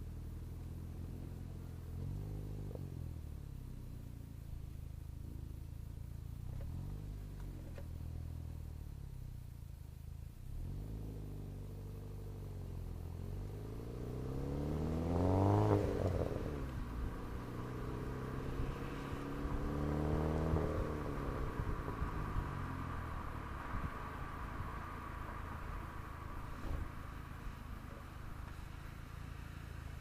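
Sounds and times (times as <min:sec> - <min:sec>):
car engine idling and revving: 0:00.0 - 0:30.0.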